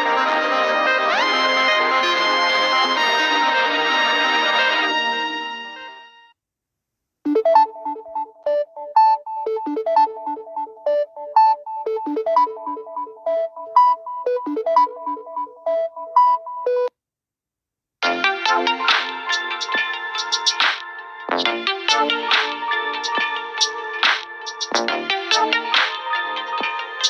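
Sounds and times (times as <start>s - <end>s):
synthesized ringtone melody: 7.3s - 16.9s, 18.0s - 27.0s.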